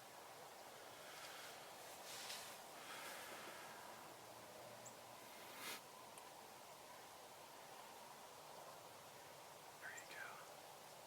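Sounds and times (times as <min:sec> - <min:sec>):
faint outdoor hiss: 0:00.0 - 0:11.0
soft rustle: 0:00.8 - 0:04.1, 0:05.2 - 0:06.3.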